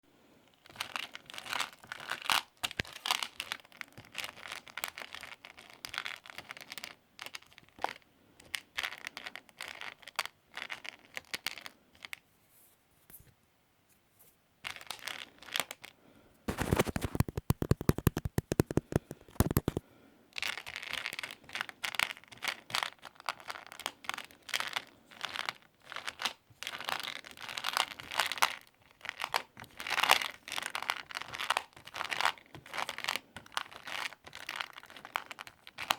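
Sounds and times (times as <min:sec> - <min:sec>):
plastic packaging crinkling: 0:00.6 - 0:11.8, 0:16.5 - 0:19.8, 0:20.4 - 0:35.9
rapid even clicking: 0:16.5 - 0:19.8.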